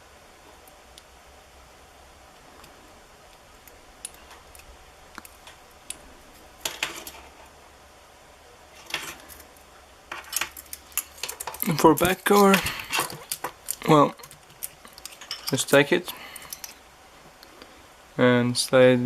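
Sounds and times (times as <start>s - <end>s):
clattering metal clinks: 15.0s - 15.7s.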